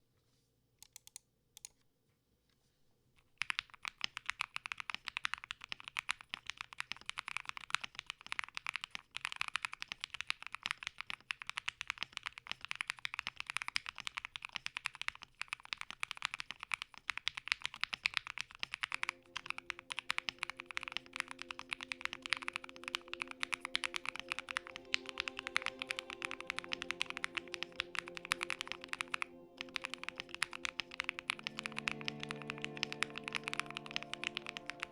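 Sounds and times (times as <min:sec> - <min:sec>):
typing on mechanical keyboard: 0:00.8 - 0:01.7, 0:03.4 - 0:34.9
soft background music: 0:18.9 - 0:34.9.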